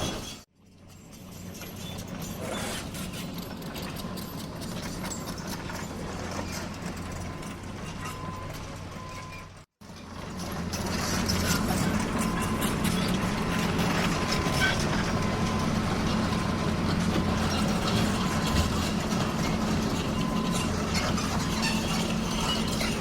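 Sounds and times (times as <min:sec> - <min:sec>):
excavator diesel engine running: 0:00.0 - 0:23.0.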